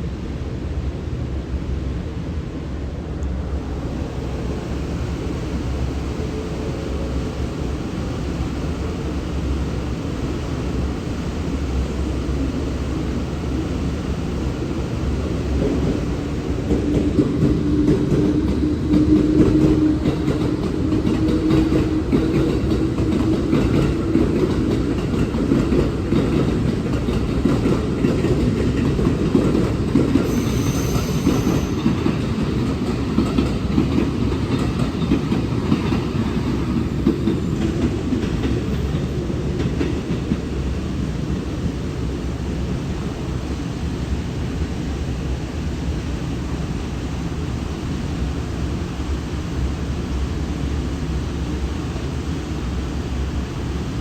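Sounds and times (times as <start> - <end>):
train wheels clickety-clack: 15.5 - 41.9.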